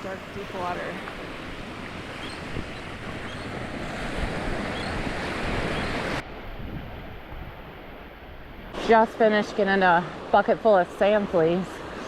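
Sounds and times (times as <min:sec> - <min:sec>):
wind buffeting microphone: 0:00.0 - 0:09.0
surf washing onto beach: 0:00.0 - 0:12.0.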